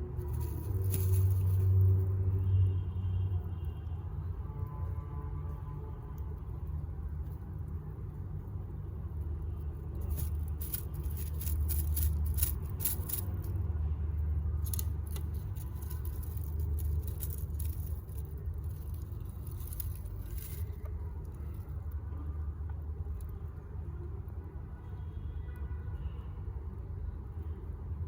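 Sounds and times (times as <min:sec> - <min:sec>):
rustling and crackling of bedding: 0:00.0 - 0:02.1, 0:10.0 - 0:13.5, 0:14.6 - 0:21.7.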